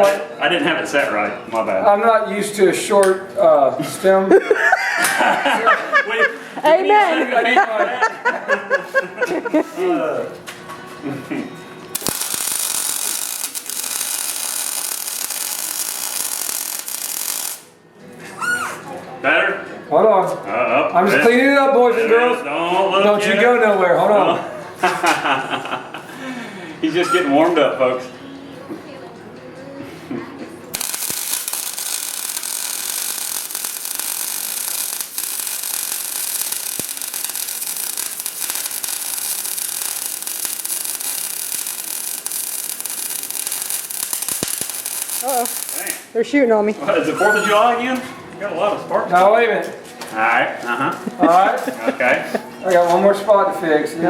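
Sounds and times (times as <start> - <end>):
welder arc crackling and sizzling: 11.9 - 17.8, 30.7 - 46.2.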